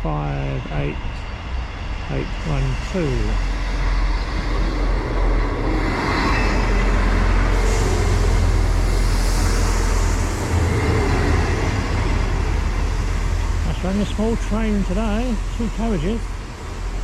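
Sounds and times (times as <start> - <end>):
diesel train engine humming: 0.0 - 17.0
air hissing: 7.4 - 11.1.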